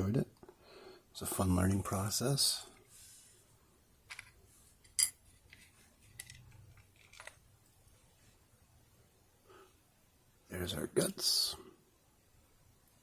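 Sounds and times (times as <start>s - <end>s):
small metal parts clinking: 4.1s - 7.5s.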